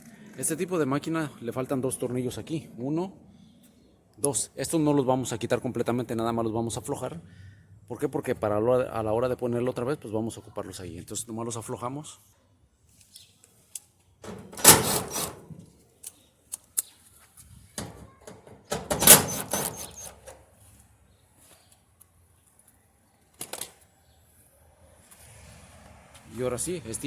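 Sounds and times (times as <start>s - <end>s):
clattering sheet metal: 14.2s - 15.5s, 17.8s - 20.2s.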